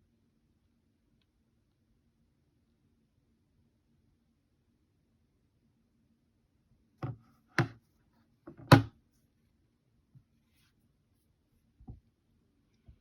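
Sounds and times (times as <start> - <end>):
small object knocking on hard surface: 7.0 - 7.8, 8.5 - 8.9.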